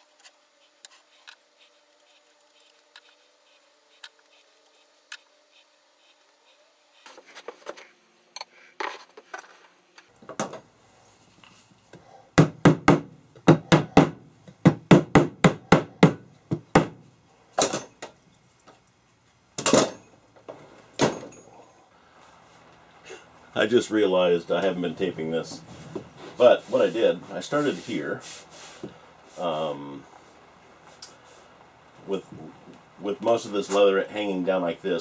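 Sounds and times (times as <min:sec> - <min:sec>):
sharp knocks on wood: 0:12.4 - 0:17.0.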